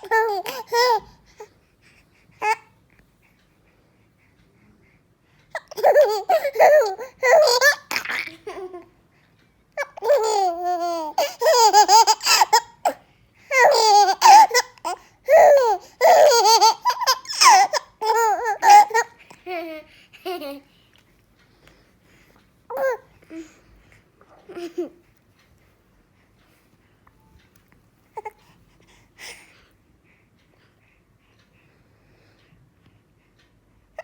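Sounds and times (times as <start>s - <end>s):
baby laughing: 0.0s - 1.1s, 5.6s - 8.9s, 9.8s - 20.6s.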